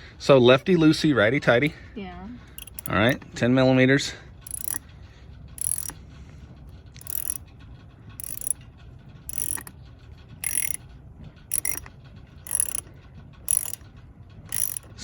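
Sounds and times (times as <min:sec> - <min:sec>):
ratchet wrench clicking: 0:02.6 - 0:03.2, 0:04.4 - 0:04.8, 0:05.6 - 0:06.0, 0:07.0 - 0:07.6, 0:08.2 - 0:08.7, 0:09.3 - 0:10.9, 0:11.5 - 0:15.0.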